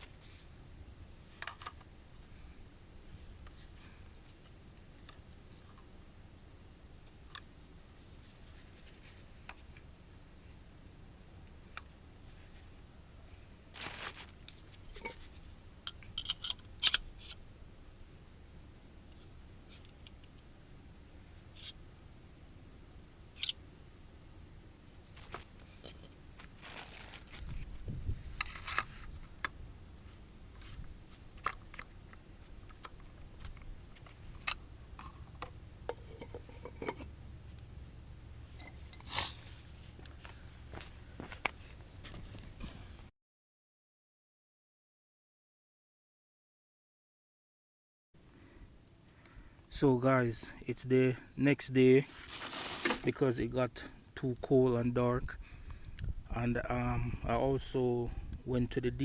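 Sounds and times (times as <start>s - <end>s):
hands handling parts: 24.9s - 29.6s, 30.5s - 37.7s, 38.4s - 43.0s, 52.1s - 53.3s
low steady rumble: 26.0s - 43.1s.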